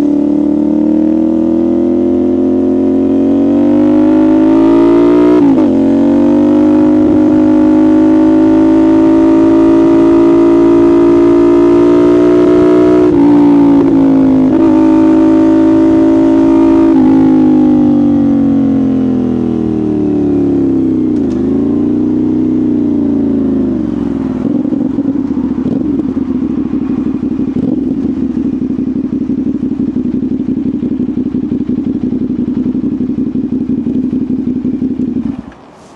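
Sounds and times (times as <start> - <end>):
motorcycle engine slowing to idle: 15.2 - 35.7.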